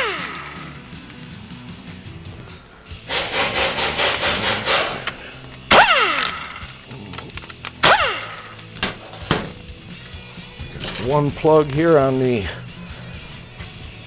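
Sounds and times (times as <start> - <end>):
ratchet wrench clicking: 0.0 - 1.2, 3.1 - 9.6.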